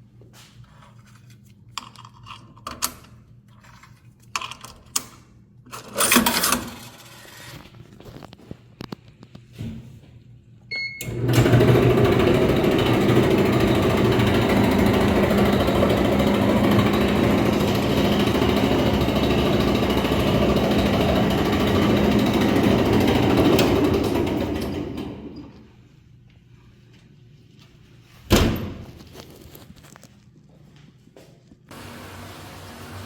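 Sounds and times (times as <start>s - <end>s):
clothes dryer drum grinding: 11.0s - 25.7s, 31.7s - 33.0s.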